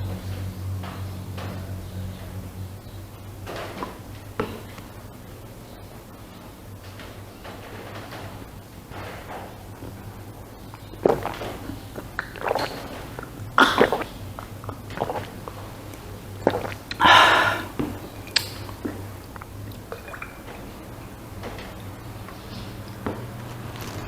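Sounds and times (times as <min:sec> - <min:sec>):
low steady hum: 0:00.0 - 0:24.0
chewing and biting food: 0:10.7 - 0:20.6.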